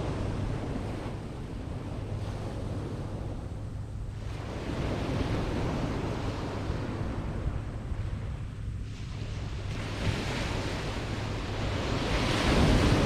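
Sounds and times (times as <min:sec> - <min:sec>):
wind rumbling on microphone: 0:00.0 - 0:13.0
waves on a shingle beach: 0:04.1 - 0:13.0.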